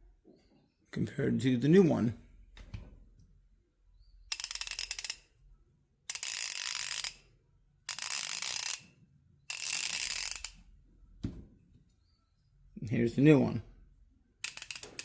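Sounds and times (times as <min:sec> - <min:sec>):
ratchet clicking: 0:04.3 - 0:05.2, 0:06.1 - 0:07.2, 0:07.9 - 0:08.8, 0:09.5 - 0:10.6, 0:14.4 - 0:15.0.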